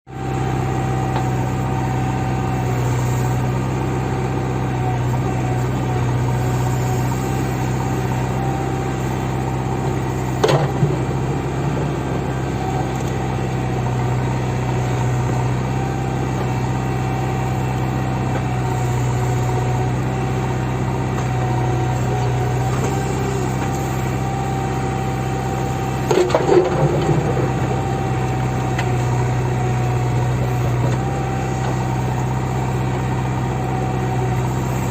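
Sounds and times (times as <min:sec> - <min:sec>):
diesel engine running: 0:00.1 - 0:34.9
knocks with clatter: 0:10.4 - 0:11.0.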